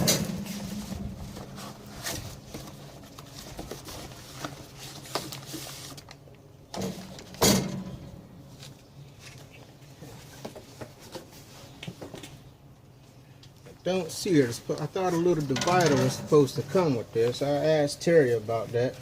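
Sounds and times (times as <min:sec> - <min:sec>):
metal grill parts clanking: 0:00.0 - 0:02.4, 0:15.4 - 0:16.6.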